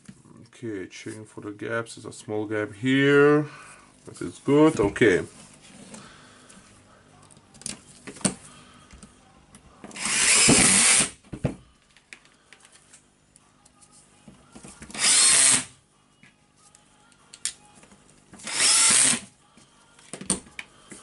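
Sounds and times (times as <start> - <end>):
power tool motor running: 10.0 - 11.1, 15.0 - 15.7, 18.5 - 19.2.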